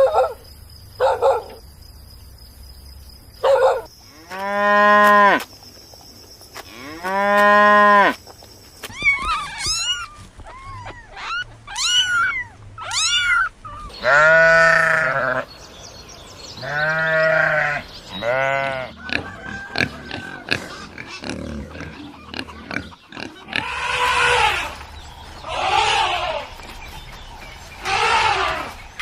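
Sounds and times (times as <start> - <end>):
rough animal calls: 8.8 - 15.5, 16.6 - 29.0
animal chirping calls: 8.9 - 15.0
animal bleating calls: 10.7 - 15.5, 16.6 - 19.2, 22.7 - 24.8, 25.4 - 26.6, 27.8 - 28.8.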